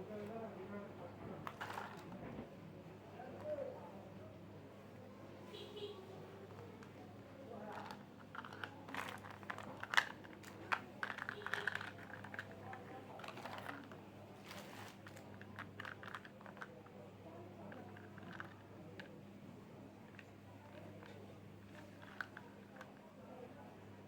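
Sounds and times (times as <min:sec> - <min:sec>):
plastic toy pieces clicking: 0:07.7 - 0:13.9.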